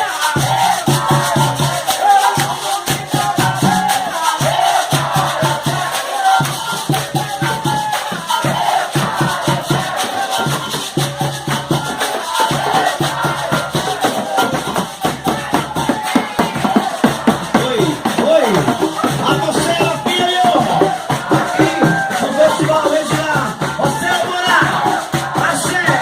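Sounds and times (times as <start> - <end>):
pulsing hand drums: 0.0 - 26.0
shakers rhythm: 0.0 - 26.0
voices singing: 0.0 - 26.0.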